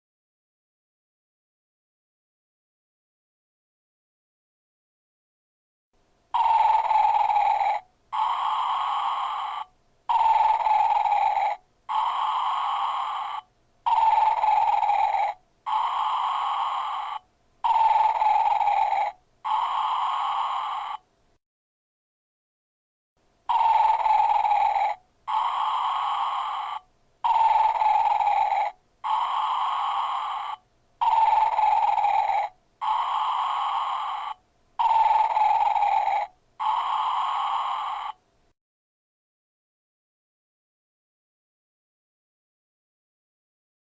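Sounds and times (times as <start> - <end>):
recorded snoring from speaker: 6.4 - 21.1, 23.5 - 38.2.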